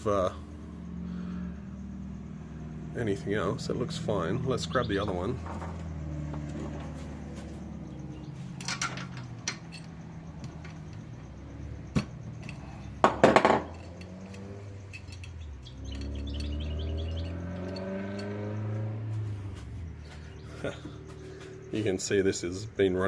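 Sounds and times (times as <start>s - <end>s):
metal tools clinking: 4.7s - 11.4s, 12.1s - 18.9s.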